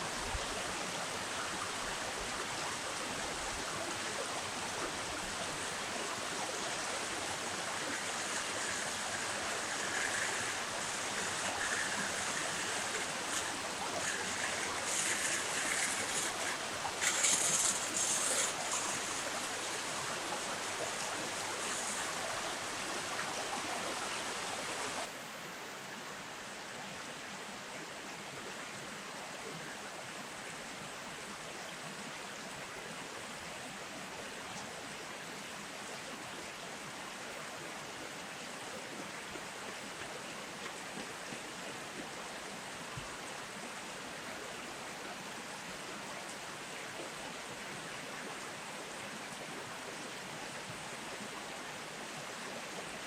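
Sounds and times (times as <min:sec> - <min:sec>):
river water rushing: 0:00.0 - 0:25.1.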